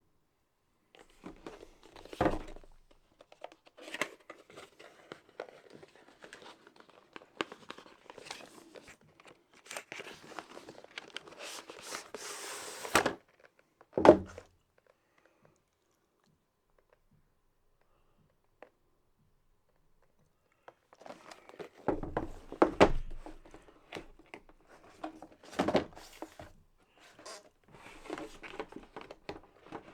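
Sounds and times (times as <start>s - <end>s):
packaging crinkling and rustling: 1.0s - 14.0s, 20.7s - 29.9s.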